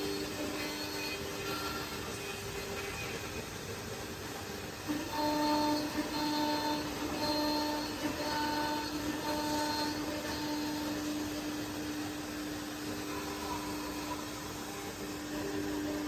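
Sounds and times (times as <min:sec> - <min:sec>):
higher machine tone: 0:00.0 - 0:16.0
milling machine motor hum: 0:00.0 - 0:16.0.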